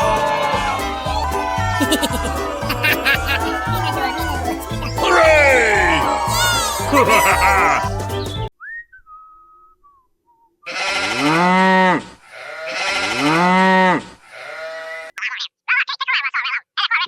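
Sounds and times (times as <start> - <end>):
sheep bleating: 0.0 - 8.0, 10.7 - 15.1.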